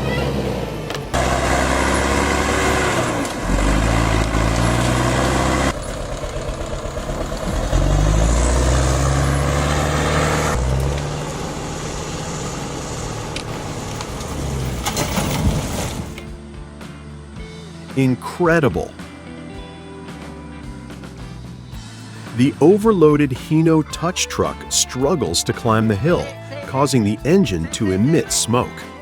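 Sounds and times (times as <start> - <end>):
heavy vehicle engines revving: 0.0 - 16.4.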